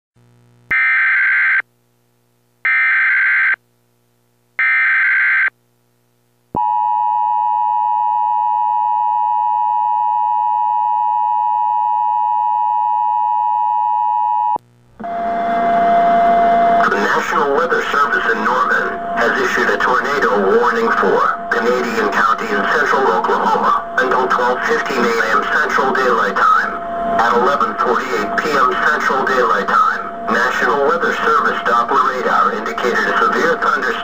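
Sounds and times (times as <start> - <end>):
two-tone attention signal: 6.6 - 34.0
data bursts: 15.0 - 34.0
noisy hiss: 16.8 - 34.0.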